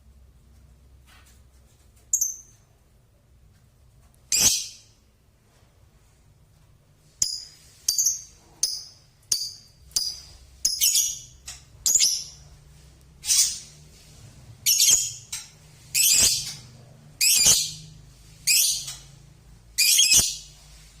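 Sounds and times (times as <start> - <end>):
lovebird shrill chattering song: 14.6 - 16.6, 17.2 - 17.8, 19.8 - 20.5.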